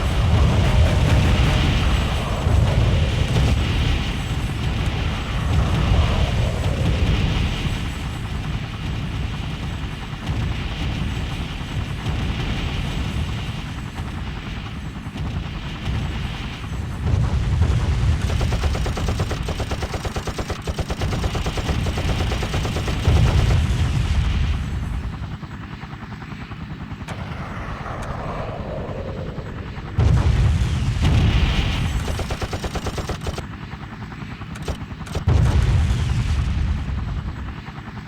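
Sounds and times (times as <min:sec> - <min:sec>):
rapid machine-gun fire: 0:00.0 - 0:25.2, 0:30.0 - 0:33.5, 0:34.6 - 0:37.1
helicopter: 0:00.0 - 0:38.0
heavy low booms: 0:27.1 - 0:32.0.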